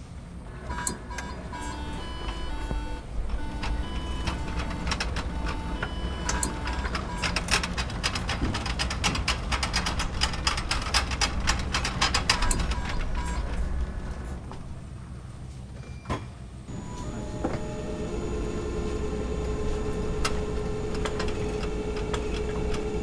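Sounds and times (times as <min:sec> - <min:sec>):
low machine hum: 0:00.0 - 0:08.9, 0:16.6 - 0:23.0
fast mechanical clicking: 0:00.8 - 0:13.9, 0:16.7 - 0:23.0.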